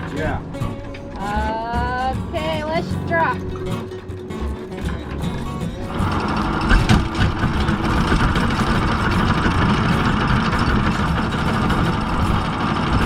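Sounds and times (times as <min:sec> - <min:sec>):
anchor chain rattling: 0:02.4 - 0:13.0.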